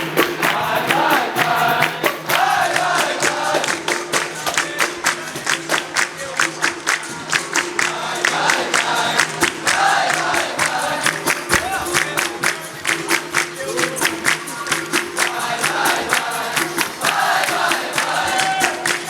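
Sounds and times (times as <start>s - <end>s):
group singing together: 0.0s - 19.0s
sharp percussion strikes: 0.0s - 19.0s
steady instruments: 0.0s - 19.0s.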